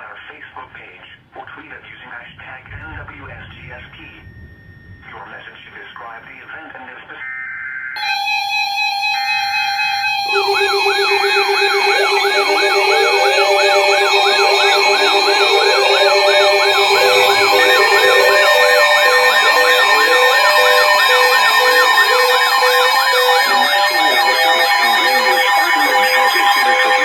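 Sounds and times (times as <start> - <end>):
pulsing beeps: 8.0 - 27.0
rising whoop siren: 8.0 - 27.0
steady alert tones: 8.0 - 27.0.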